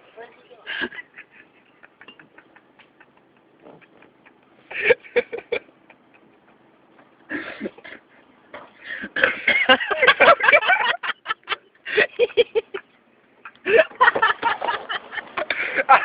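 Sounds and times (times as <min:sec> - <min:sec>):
people laughing: 0:00.6 - 0:08.1, 0:08.9 - 0:16.0.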